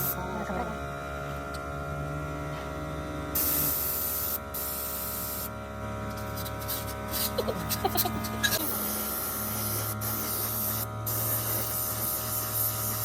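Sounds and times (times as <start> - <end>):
steady electrical hum: 0.0 - 13.0
compressed air hissing: 3.4 - 5.5, 8.8 - 13.0.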